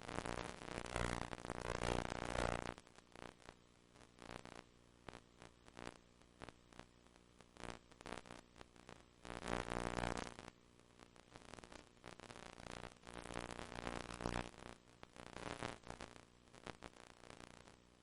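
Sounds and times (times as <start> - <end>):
tape audio buzz: 0.0 - 3.3, 7.6 - 10.5, 11.1 - 17.6.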